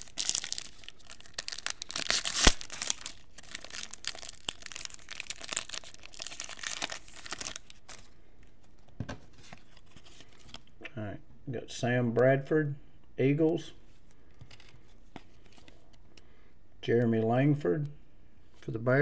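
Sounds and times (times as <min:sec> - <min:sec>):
foil pack tearing and crinkling: 0:00.0 - 0:08.1.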